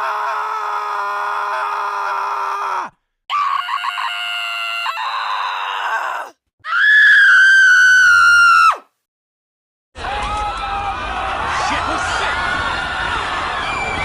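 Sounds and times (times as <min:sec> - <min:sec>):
held scream: 0:00.0 - 0:08.9.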